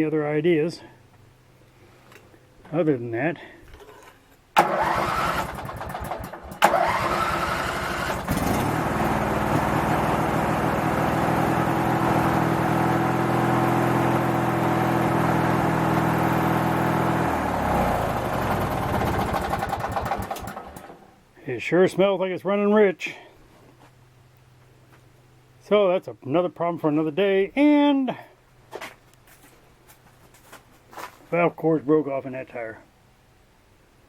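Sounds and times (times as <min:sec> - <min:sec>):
starter motor cranking: 0:04.6 - 0:11.4, 0:17.5 - 0:21.0
mower engine running: 0:04.6 - 0:21.1.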